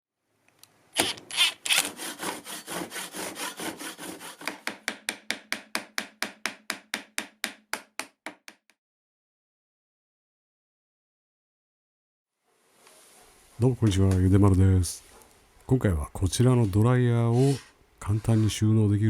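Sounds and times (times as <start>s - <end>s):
hand tool rasping on wood: 1.3s - 5.1s.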